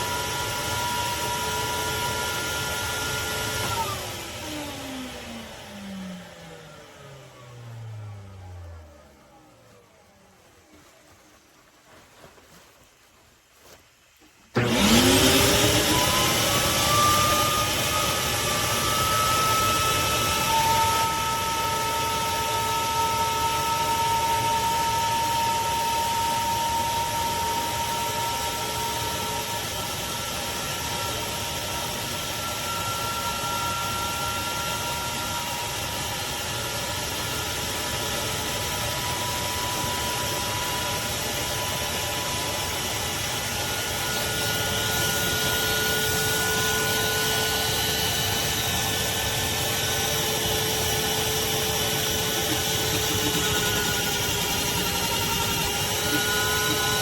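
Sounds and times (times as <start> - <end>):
shop vacuum running: 0.0 - 11.6, 14.4 - 57.0.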